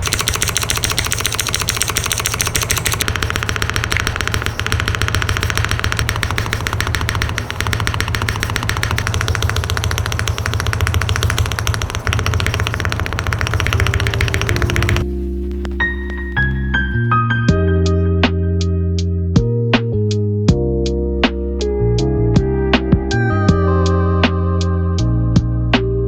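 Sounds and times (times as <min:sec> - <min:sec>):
keyboard spacebar clicking: 0:00.0 - 0:15.0
piano music: 0:02.8 - 0:25.7.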